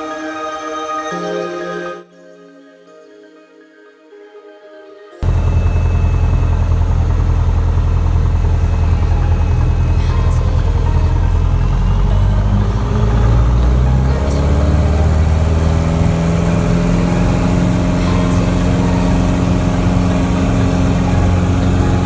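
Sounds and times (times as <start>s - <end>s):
light aircraft engine running: 5.2s - 22.0s.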